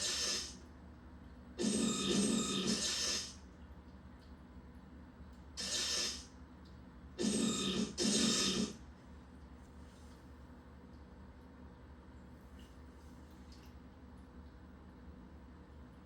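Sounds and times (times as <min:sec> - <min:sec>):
hissing weapon sound effects: 0:00.0 - 0:00.6, 0:01.6 - 0:03.4, 0:05.6 - 0:06.2.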